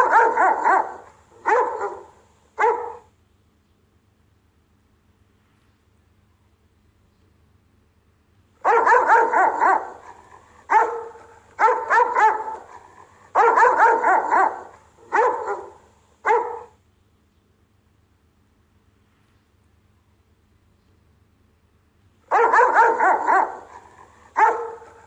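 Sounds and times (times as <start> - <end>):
dog barking: 0.0 - 3.1, 8.6 - 16.8, 22.3 - 25.0.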